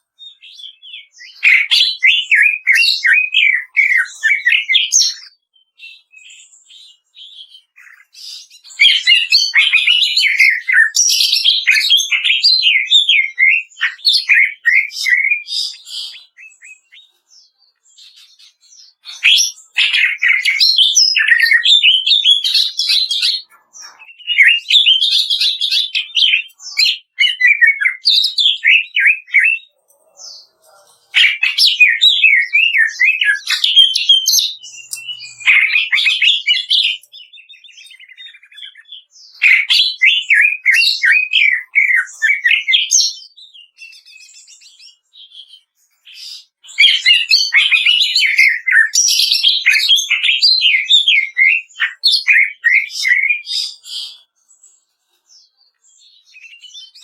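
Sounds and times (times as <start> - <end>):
bird singing chattering bursts: 31.2 - 42.6.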